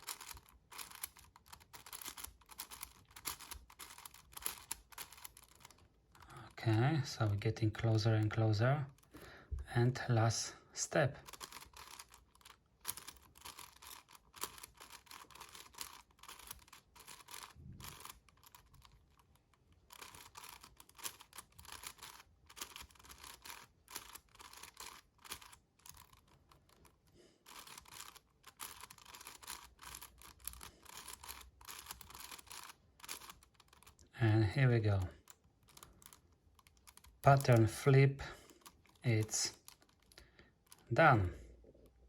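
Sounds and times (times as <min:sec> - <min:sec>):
puzzle cube layers clicking: 0:00.0 - 0:05.8, 0:11.2 - 0:34.1.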